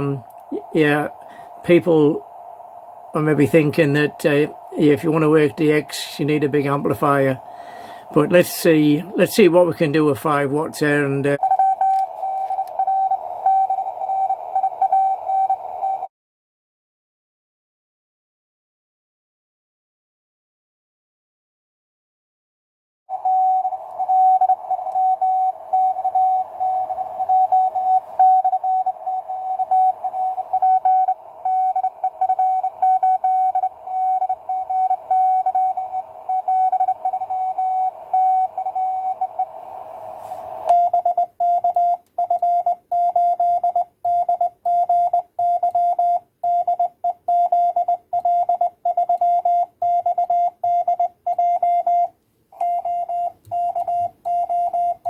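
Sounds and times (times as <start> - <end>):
morse code keyed tone: 0.0 - 16.1, 23.1 - 55.0
radio band hiss: 0.0 - 16.1, 23.2 - 40.8.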